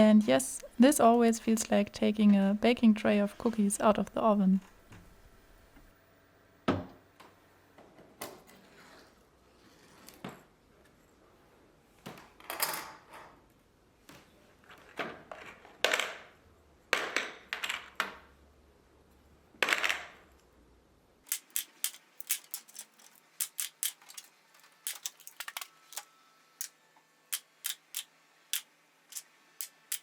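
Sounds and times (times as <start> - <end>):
plastic pieces rustling and knocking: 21.3 - 26.7, 27.4 - 30.0.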